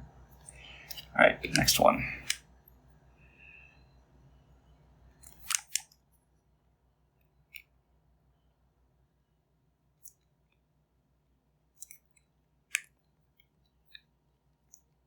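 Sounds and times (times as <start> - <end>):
headphone parts clicking: 5.2 - 6.0.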